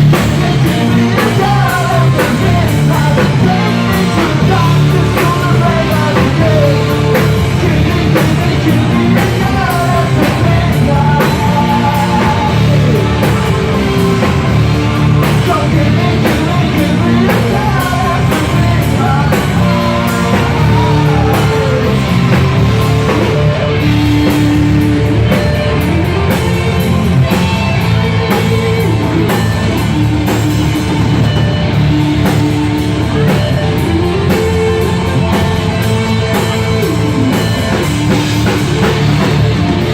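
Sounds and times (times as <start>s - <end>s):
lead vocal singing: 0.0s - 26.6s
live rock band playing: 0.0s - 39.9s.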